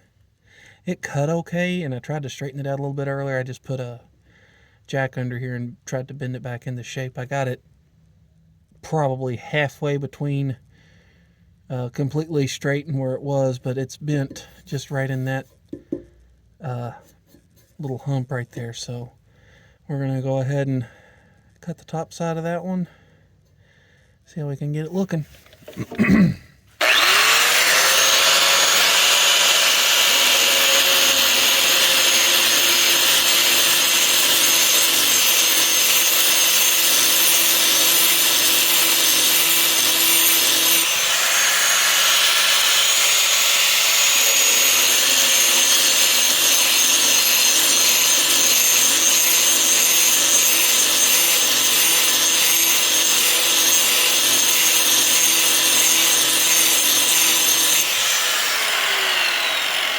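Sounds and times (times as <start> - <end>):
grinder grinding steel: 24.9 - 59.9.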